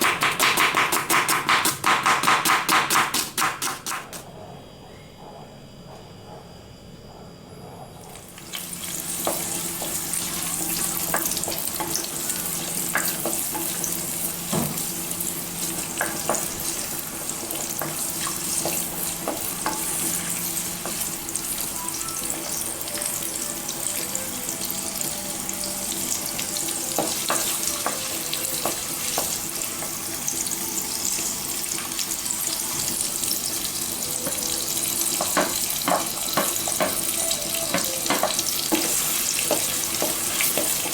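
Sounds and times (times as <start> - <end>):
onions sizzling in hot oil: 8.2 - 40.9.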